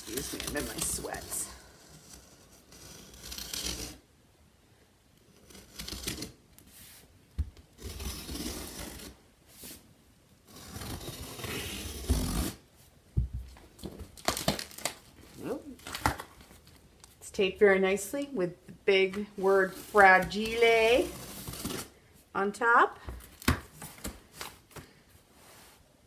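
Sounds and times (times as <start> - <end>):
cardboard box scraping and rustling: 10.5 - 12.6.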